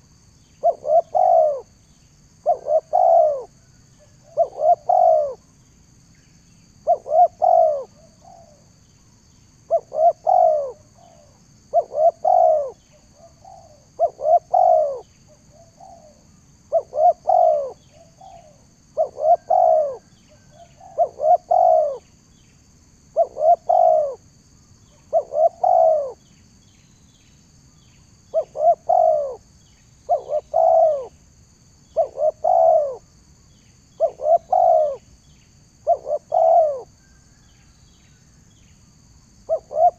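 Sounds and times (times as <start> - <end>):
dove cooing: 0.6 - 1.8, 2.4 - 5.4, 6.8 - 8.6, 9.7 - 22.1, 23.1 - 24.2, 24.9 - 26.2, 28.3 - 29.5, 30.1 - 31.2, 31.9 - 33.1, 34.0 - 35.2, 35.8 - 37.4, 39.5 - 39.9.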